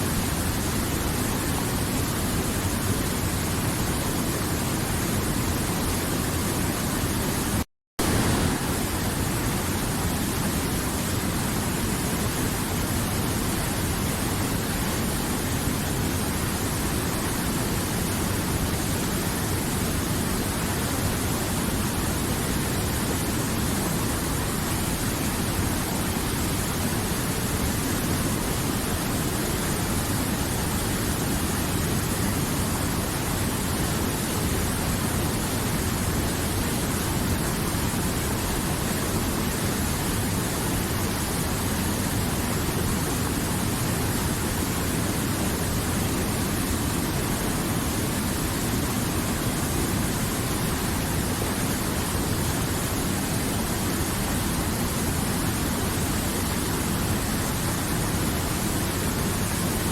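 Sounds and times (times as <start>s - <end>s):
river water flowing: 0.0s - 59.9s.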